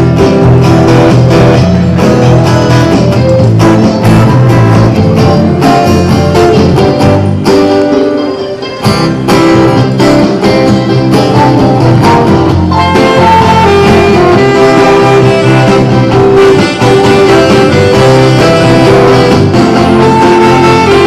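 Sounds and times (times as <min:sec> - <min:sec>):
bass: 0:00.0 - 0:21.0
guitar: 0:00.0 - 0:21.0
held melody line: 0:00.0 - 0:21.0.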